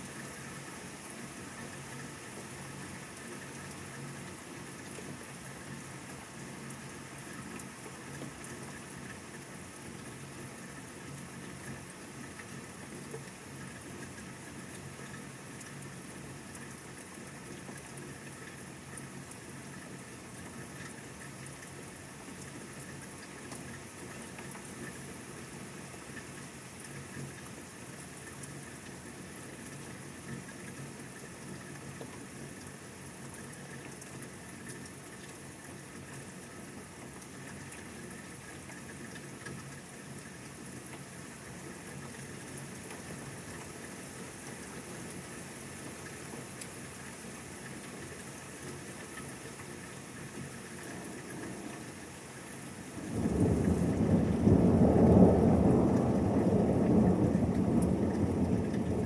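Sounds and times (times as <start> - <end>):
steady rain: 0.0 - 59.0
low thunder peal: 53.0 - 59.0.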